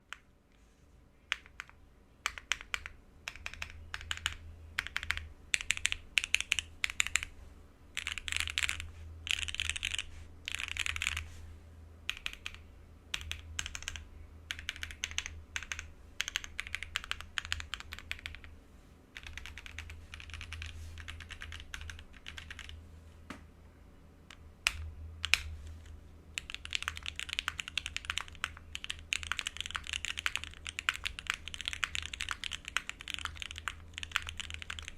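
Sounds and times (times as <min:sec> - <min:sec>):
typing on mechanical keyboard: 0:01.3 - 0:07.3, 0:08.0 - 0:11.2, 0:12.1 - 0:18.5, 0:19.2 - 0:22.8, 0:24.6 - 0:25.5, 0:26.4 - 0:34.9.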